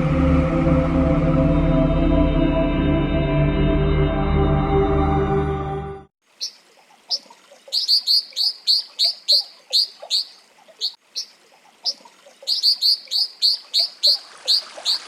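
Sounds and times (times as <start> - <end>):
ambient music: 0.0 - 6.1
bird high-pitched calls: 6.4 - 15.0.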